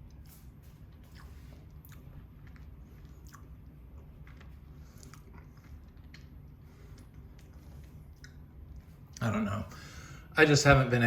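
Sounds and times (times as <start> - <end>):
low steady hum: 0.0 - 11.0
person chewing with wet mouth clicks: 1.0 - 8.9.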